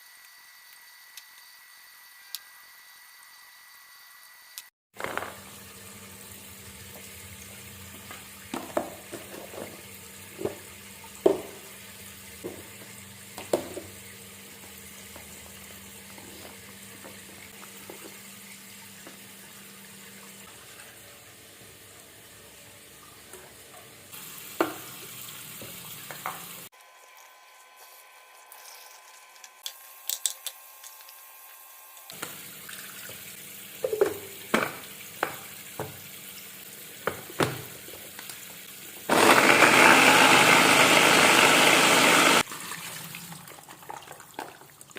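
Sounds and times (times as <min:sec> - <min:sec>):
hiss of water or frying: 0:24.1 - 0:26.7, 0:32.0 - 0:39.1.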